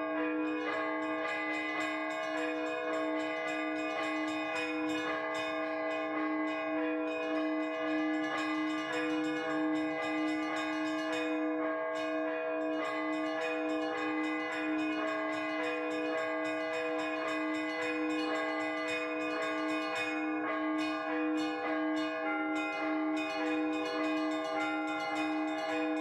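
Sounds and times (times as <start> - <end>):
small church bells chiming: 0.0 - 26.0.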